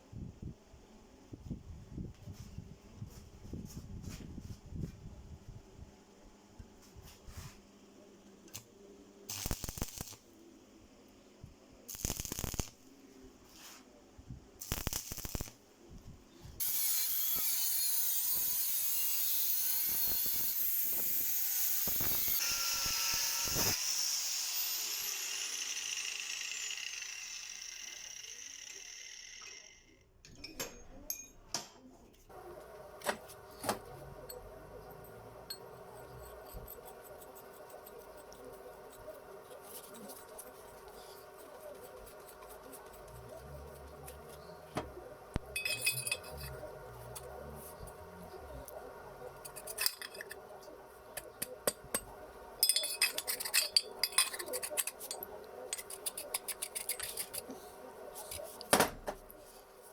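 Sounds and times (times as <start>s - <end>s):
power tool whining: 21.6s - 29.9s.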